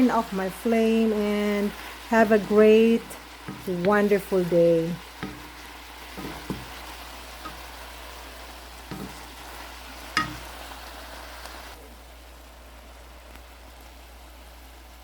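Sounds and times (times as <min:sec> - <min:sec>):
food sizzling in a pot: 0:00.0 - 0:15.0
utensil knocking against pot: 0:03.5 - 0:04.0, 0:05.2 - 0:05.6, 0:06.2 - 0:06.7, 0:10.2 - 0:10.4.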